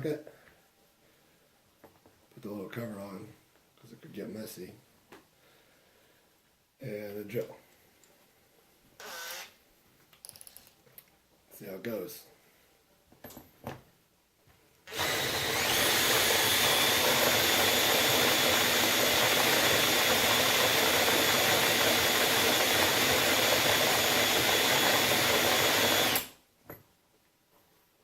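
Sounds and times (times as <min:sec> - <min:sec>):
cordless drill motor whine: 0:09.0 - 0:09.6, 0:14.9 - 0:26.4
coffee beans grinding: 0:14.9 - 0:26.2.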